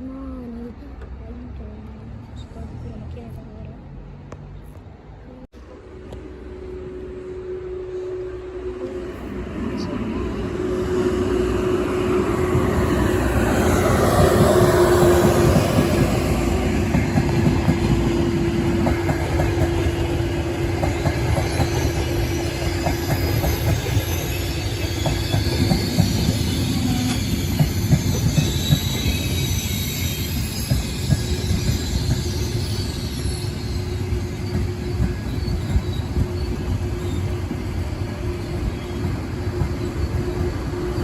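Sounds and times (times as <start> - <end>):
train rumbling on track: 0.0 - 41.0
rail clicks: 12.1 - 41.0
wheel squeal: 20.8 - 41.0.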